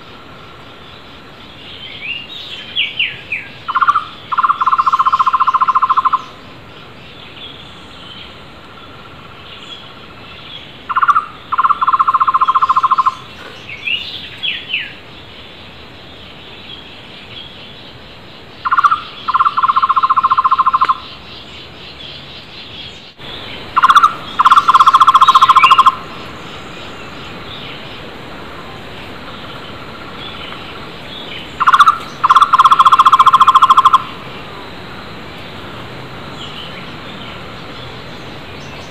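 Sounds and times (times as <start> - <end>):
other birds calling: 0.0 - 38.9
barbet trilling call: 2.8 - 6.4, 10.9 - 13.3, 18.6 - 21.3, 23.2 - 27.9, 31.3 - 34.5.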